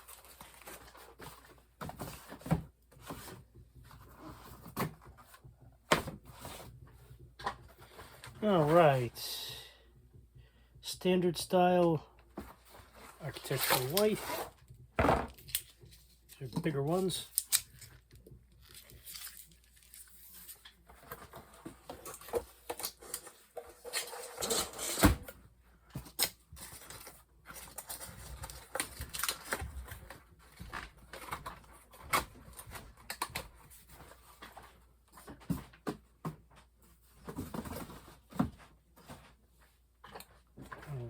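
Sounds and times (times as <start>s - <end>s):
clicks and knocks of boxes: 0.0s - 8.7s, 20.6s - 41.0s
cardboard rustling: 0.0s - 9.2s, 12.2s - 41.0s.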